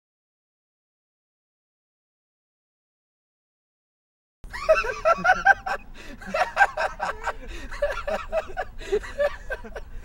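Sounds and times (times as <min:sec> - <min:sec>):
people laughing: 0:04.5 - 0:10.0.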